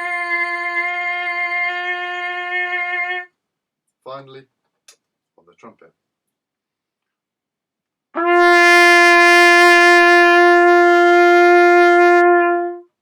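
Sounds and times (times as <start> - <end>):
trumpet playing long note: 8.2 - 12.9.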